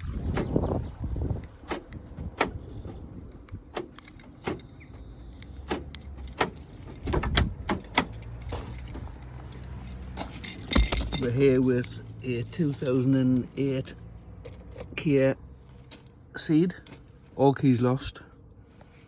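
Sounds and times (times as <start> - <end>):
car doors knocking: 0.0 - 1.0, 1.6 - 8.3
car keys clicking: 0.0 - 12.0.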